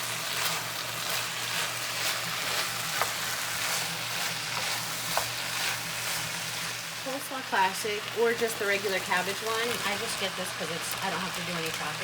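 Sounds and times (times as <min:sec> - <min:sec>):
vegetables sizzling in a pan: 0:00.0 - 0:12.0
utensil clicking against pan: 0:00.4 - 0:05.8.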